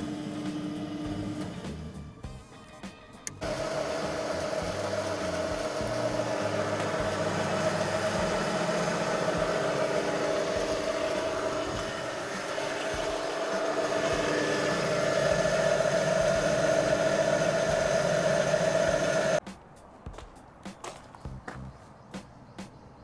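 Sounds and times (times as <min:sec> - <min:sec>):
kneader motor humming: 0:00.0 - 0:02.0, 0:03.2 - 0:19.4.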